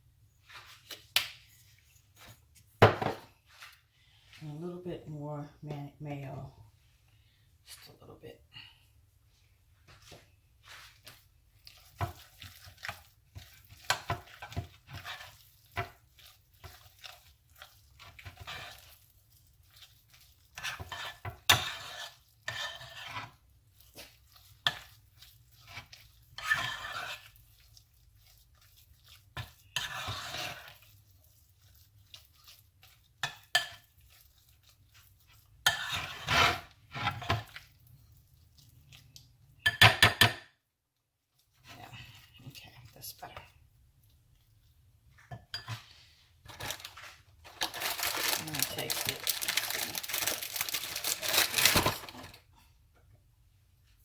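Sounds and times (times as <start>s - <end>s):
spoon scraping a bowl: 10.7s - 40.4s, 45.2s - 52.0s.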